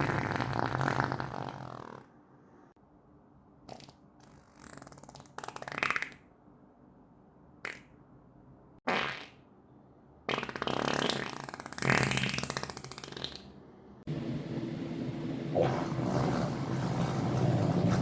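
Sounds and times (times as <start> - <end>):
farts: 0.0 - 2.1, 3.7 - 6.2, 8.8 - 9.4, 10.3 - 13.5, 15.6 - 18.0.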